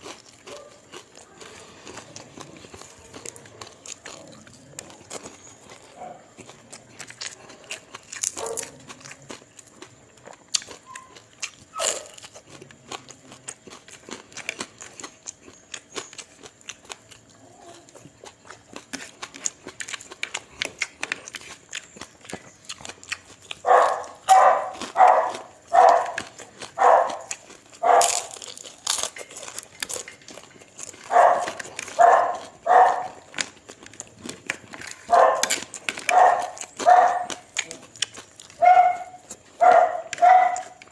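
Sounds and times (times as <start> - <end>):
dog barking: 0.5 - 0.8, 8.4 - 8.8, 23.6 - 28.3, 31.1 - 33.2, 35.1 - 37.4, 38.6 - 40.8
eating clicks and smacks: 18.0 - 40.9.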